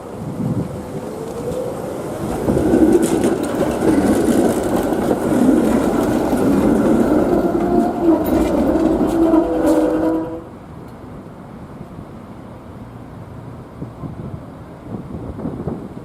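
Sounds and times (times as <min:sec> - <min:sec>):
tram wheels rumbling on rails: 0:00.0 - 0:16.0
clicks over rail joints: 0:01.2 - 0:10.3.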